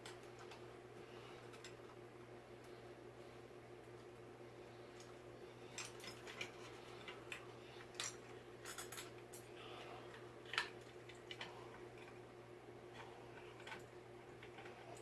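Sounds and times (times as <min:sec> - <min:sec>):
faint steady hum: 0:00.0 - 0:15.0
small metallic parts clicking: 0:05.7 - 0:09.5.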